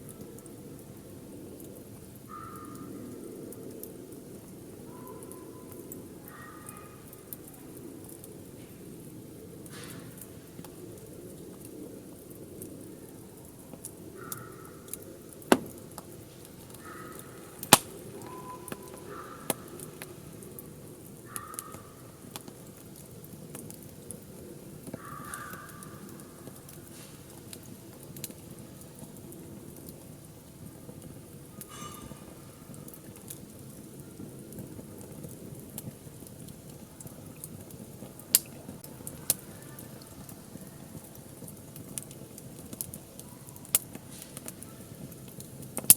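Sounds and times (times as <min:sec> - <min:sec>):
wood fire crackling: 0:00.0 - 0:45.9
faint calls: 0:14.0 - 0:22.3, 0:24.9 - 0:26.8
wood popping: 0:15.3 - 0:20.1.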